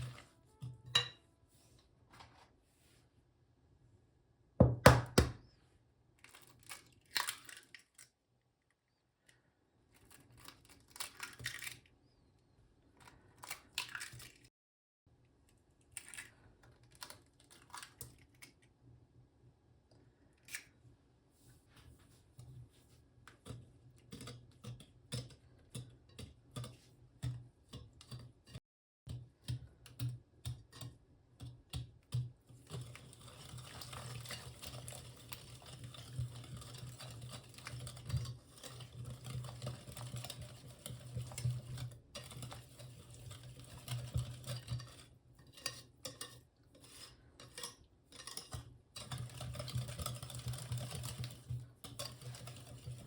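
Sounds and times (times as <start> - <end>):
utensil stirring batter in bowl: 0.0 - 1.2, 21.5 - 53.0.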